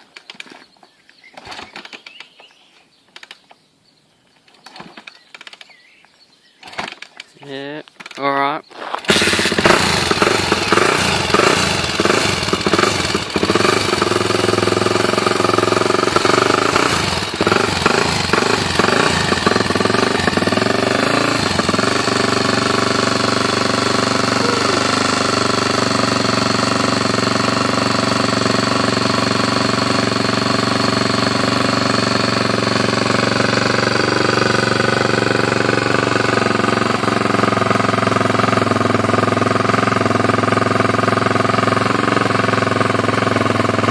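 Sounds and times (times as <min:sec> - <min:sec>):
motorcycle engine idling: 0:09.0 - 0:43.9.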